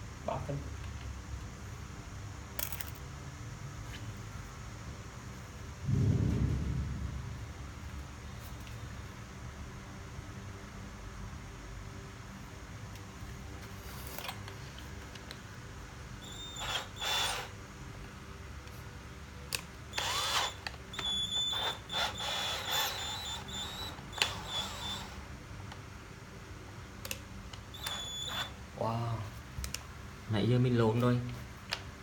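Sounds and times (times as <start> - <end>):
cordless drill whining: 16.2 - 17.6, 19.9 - 25.3, 27.5 - 28.6.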